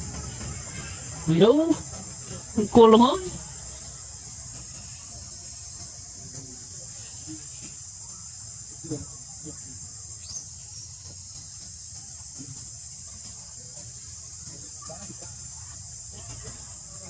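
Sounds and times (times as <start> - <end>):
high-pitched insect drone: 0.0 - 17.0.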